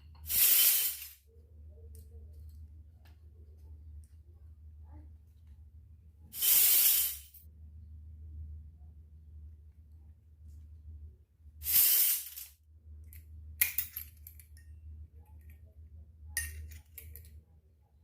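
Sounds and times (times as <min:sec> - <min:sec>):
low steady hum: 0:00.0 - 0:06.4, 0:07.3 - 0:18.0.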